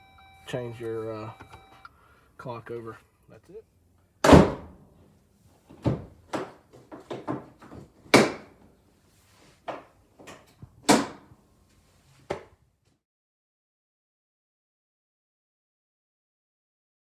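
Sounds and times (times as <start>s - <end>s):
sharp knocks and clunks: 4.2s - 4.7s, 5.7s - 8.6s, 9.7s - 11.3s.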